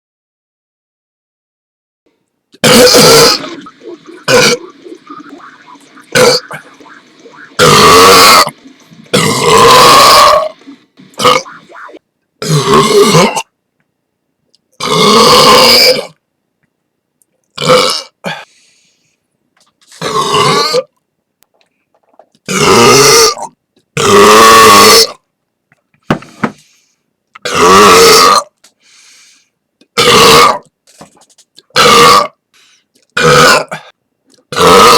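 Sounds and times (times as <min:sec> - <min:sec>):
person burping loudly: 0:02.6 - 0:10.6, 0:11.2 - 0:13.5, 0:14.8 - 0:16.1, 0:17.6 - 0:18.5, 0:20.0 - 0:20.9, 0:22.5 - 0:25.1, 0:27.4 - 0:28.5, 0:30.0 - 0:30.6, 0:31.7 - 0:32.4, 0:33.2 - 0:34.9.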